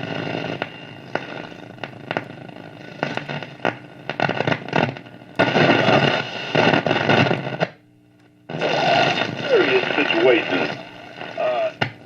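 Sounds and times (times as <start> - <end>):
faint steady hum: 0.0 - 12.0
radio static crackling: 0.0 - 12.0.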